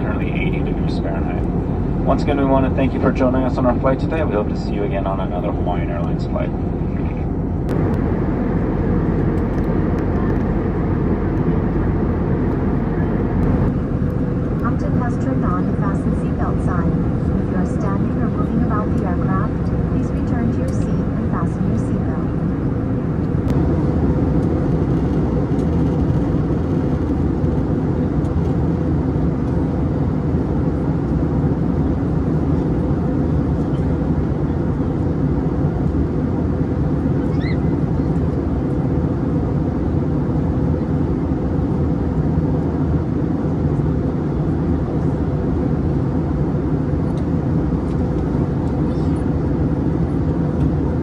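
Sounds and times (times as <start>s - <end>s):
airliner cabin engine rumble: 0.0s - 51.0s
faint steady hum: 0.0s - 51.0s.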